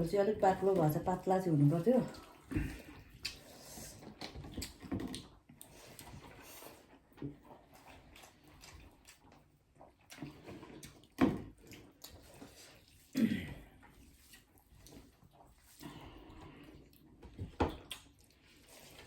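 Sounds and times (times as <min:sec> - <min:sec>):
soft chewing: 0:01.8 - 0:19.0
lip smacks: 0:02.8 - 0:06.1, 0:17.7 - 0:18.4.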